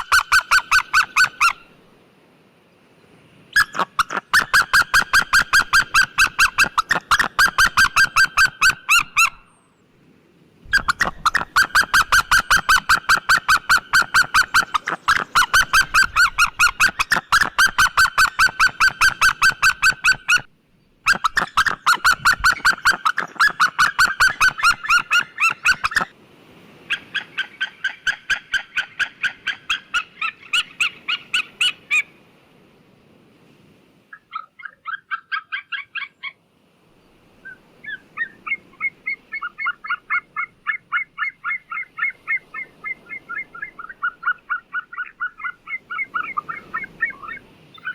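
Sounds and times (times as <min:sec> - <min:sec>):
eagle yelping calls: 0:00.0 - 0:01.8, 0:03.5 - 0:09.6, 0:10.7 - 0:26.1, 0:26.8 - 0:32.2, 0:34.1 - 0:36.4, 0:37.3 - 0:47.9.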